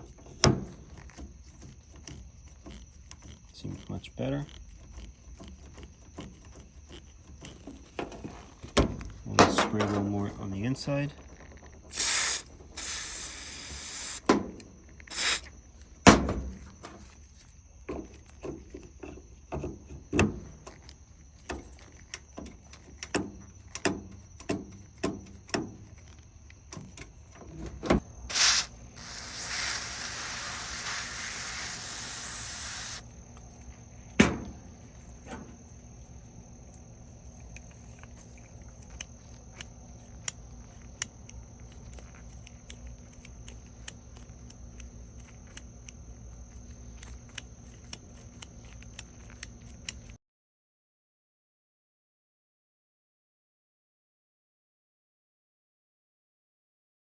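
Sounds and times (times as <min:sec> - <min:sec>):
aerosol spray hissing: 0:11.9 - 0:14.3, 0:15.1 - 0:15.5, 0:28.3 - 0:33.0.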